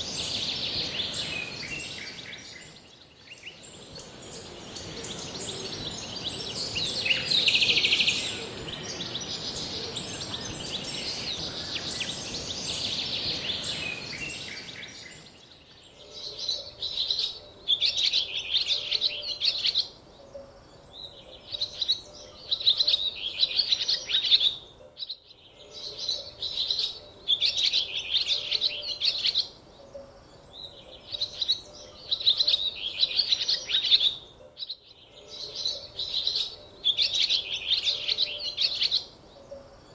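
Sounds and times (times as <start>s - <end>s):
small birds chirping: 0.0s - 15.6s
background hiss: 0.0s - 16.2s.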